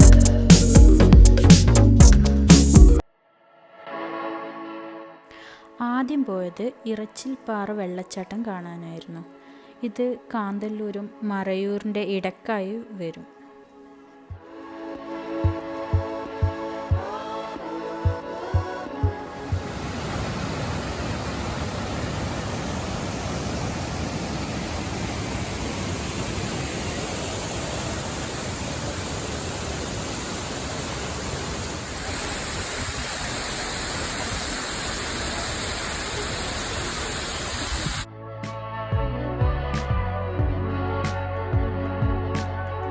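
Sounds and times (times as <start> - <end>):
waterfall rushing: 19.3 - 38.1.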